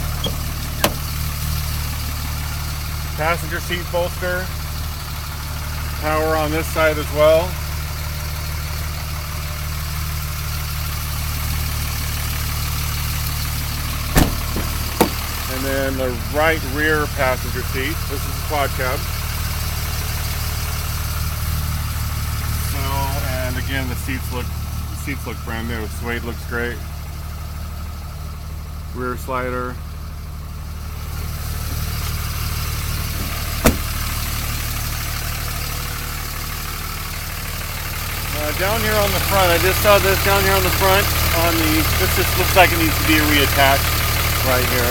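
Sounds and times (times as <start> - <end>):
diesel engine idling: 0.0 - 44.9
sharp knock: 33.2 - 33.9.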